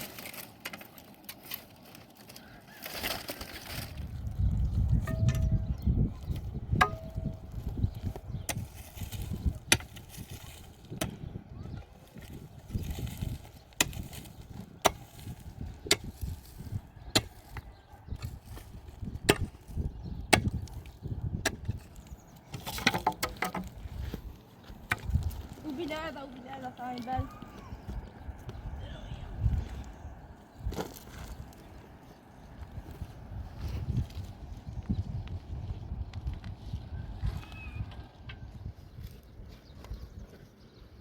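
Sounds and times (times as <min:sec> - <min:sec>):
axe chopping wood: 0:08.5 - 0:10.3, 0:19.2 - 0:20.8, 0:22.5 - 0:23.8.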